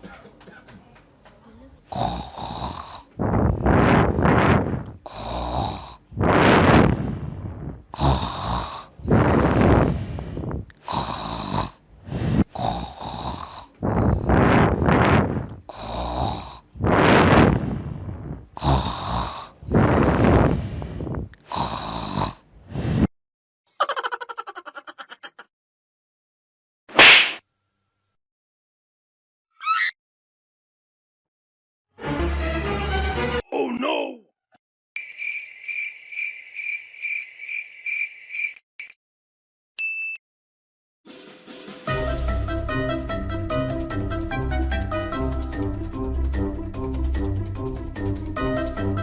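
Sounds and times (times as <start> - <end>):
person snoring loudly: 1.9 - 23.1
cricket chirping: 35.0 - 38.9.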